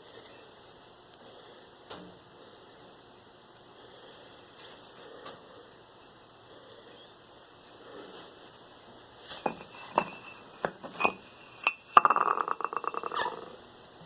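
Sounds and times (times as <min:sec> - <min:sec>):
hard objects clinking and knocking: 0:09.4 - 0:13.5.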